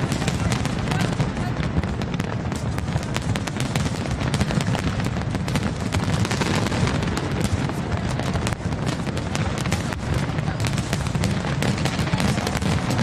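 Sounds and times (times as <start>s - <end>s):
fireworks cracking and popping: 0.0s - 13.0s.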